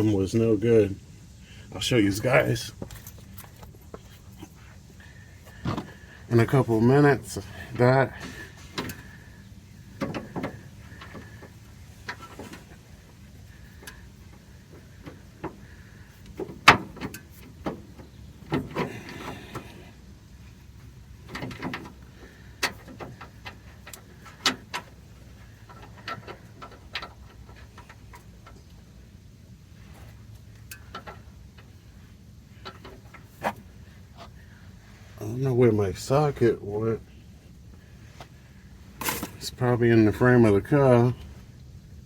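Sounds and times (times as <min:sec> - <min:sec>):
low steady hum: 0:00.0 - 0:42.0
clinks of tools and metal parts: 0:02.8 - 0:04.6, 0:39.0 - 0:39.6.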